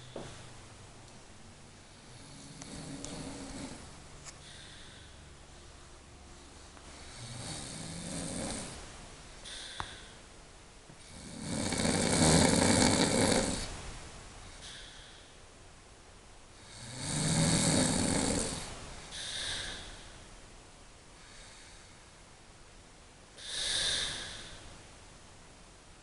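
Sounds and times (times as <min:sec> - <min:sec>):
noisy breathing: 0:00.0 - 0:00.6, 0:01.6 - 0:15.6, 0:16.5 - 0:20.5, 0:21.1 - 0:22.4, 0:23.3 - 0:25.0
woman snoring: 0:01.9 - 0:05.1, 0:07.0 - 0:08.8, 0:11.0 - 0:13.7, 0:16.6 - 0:20.0, 0:23.4 - 0:24.6.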